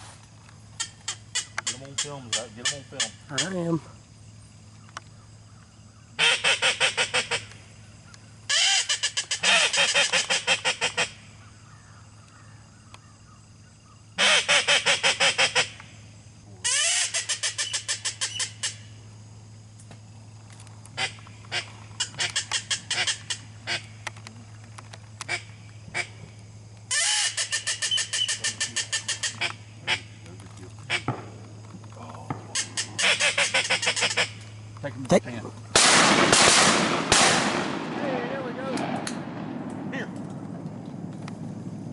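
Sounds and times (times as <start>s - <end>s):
geese honking: 6.1s - 7.6s, 8.5s - 11.2s, 14.2s - 15.8s, 16.6s - 18.8s, 21.0s - 24.1s, 25.2s - 26.3s, 26.9s - 30.2s, 32.6s - 34.5s.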